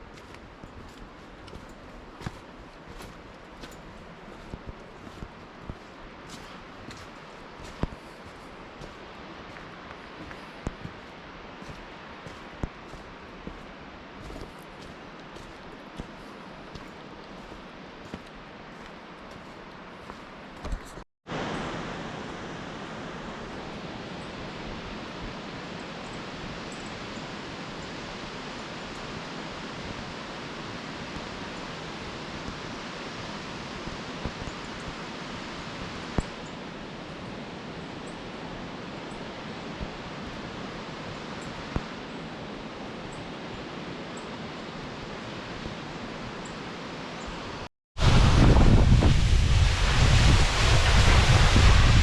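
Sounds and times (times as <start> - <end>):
waterfall rushing: 48.0 - 52.0.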